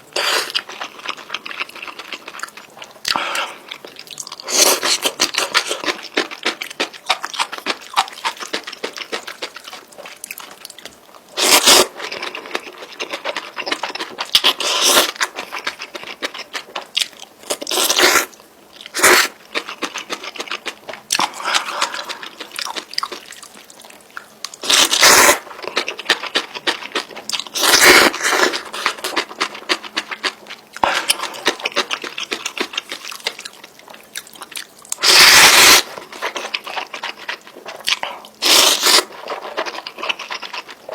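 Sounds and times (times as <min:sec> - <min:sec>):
noisy eating bursts: 0:00.0 - 0:40.9.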